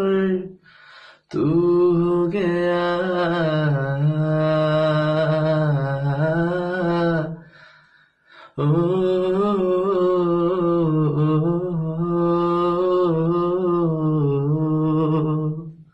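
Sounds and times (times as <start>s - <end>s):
short breath: 0.6s - 1.3s, 7.4s - 8.6s
man humming a melody: 8.6s - 15.9s.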